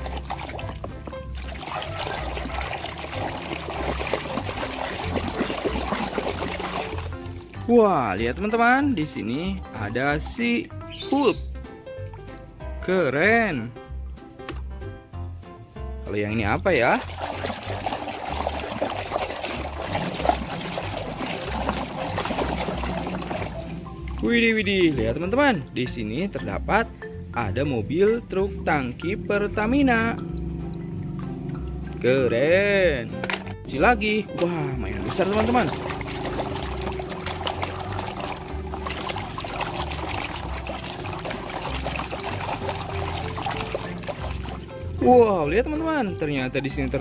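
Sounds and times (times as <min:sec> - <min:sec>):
small splashes: 0:00.0 - 0:08.6, 0:16.6 - 0:24.4, 0:34.4 - 0:47.0
water trickling and pouring: 0:00.0 - 0:10.4, 0:16.5 - 0:25.2, 0:34.5 - 0:47.0.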